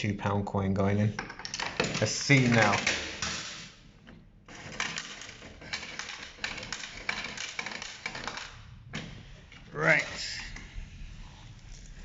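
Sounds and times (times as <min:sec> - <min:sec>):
coins clinking into tray: 0:04.5 - 0:08.6.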